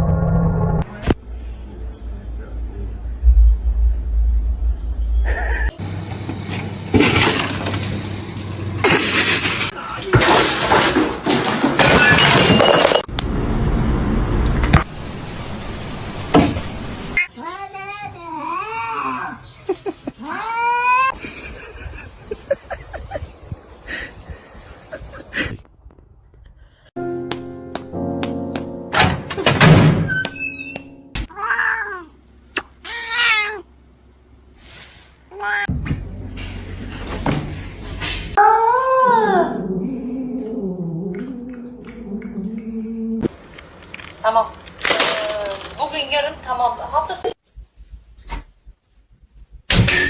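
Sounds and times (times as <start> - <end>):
cat meowing: 31.3 - 32.2, 32.8 - 33.7.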